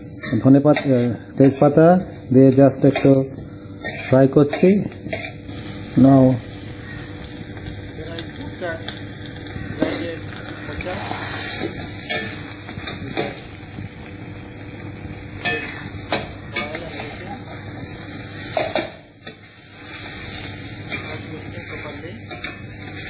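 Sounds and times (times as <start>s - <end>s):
spices sizzling in hot oil: 0.0s - 23.0s
utensil scraping a pan: 0.2s - 5.9s, 9.6s - 13.5s, 15.4s - 23.0s.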